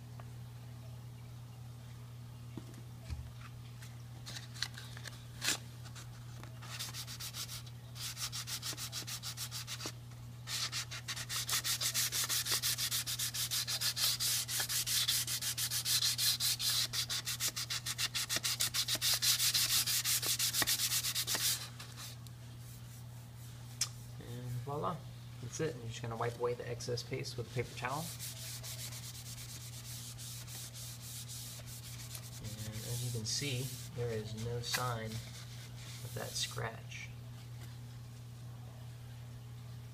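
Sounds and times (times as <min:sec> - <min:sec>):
disc scrubbing wood: 0:10.5 - 0:22.1, 0:26.1 - 0:36.6.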